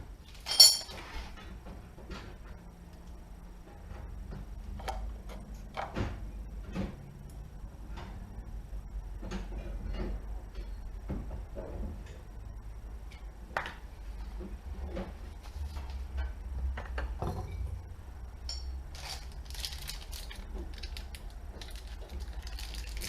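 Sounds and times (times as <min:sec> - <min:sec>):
steady low hum: 0:00.0 - 0:23.0
small metal parts clinking: 0:00.3 - 0:00.9.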